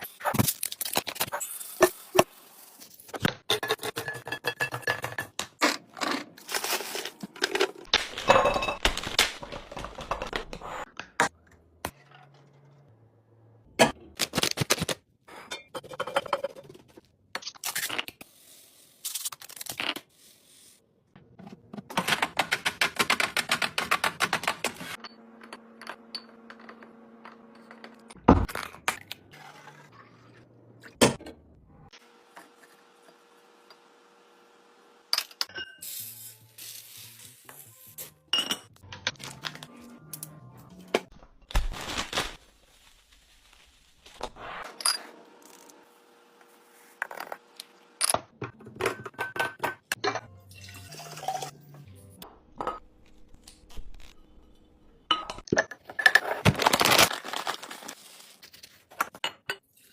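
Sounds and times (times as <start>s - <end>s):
household items thunking and scraping: 5.0s - 10.9s
packaging rustling: 41.5s - 44.2s, 56.4s - 58.5s.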